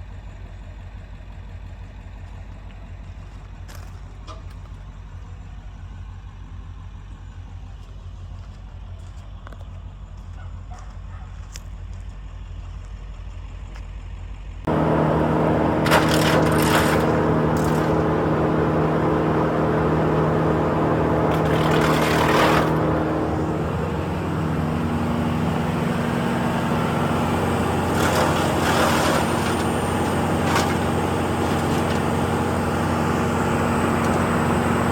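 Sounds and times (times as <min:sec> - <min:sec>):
wood chipper engine running: 0:14.7 - 0:34.9.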